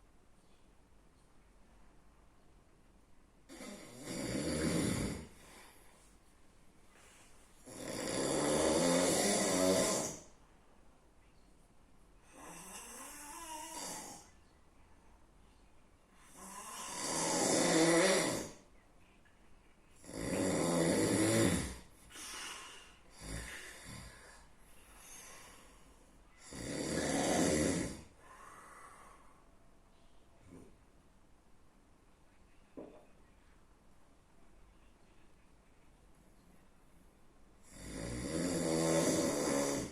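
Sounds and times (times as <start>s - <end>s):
quiet breaths: 0.0s - 39.9s
person snoring heavily: 3.5s - 5.4s, 7.6s - 10.3s, 12.3s - 14.3s, 16.3s - 18.6s, 20.0s - 24.4s, 26.4s - 28.2s, 37.6s - 39.9s.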